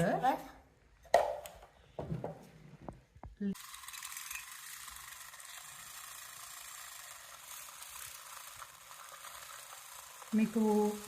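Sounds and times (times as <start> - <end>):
electric coffee frother whirring: 3.5 - 11.0.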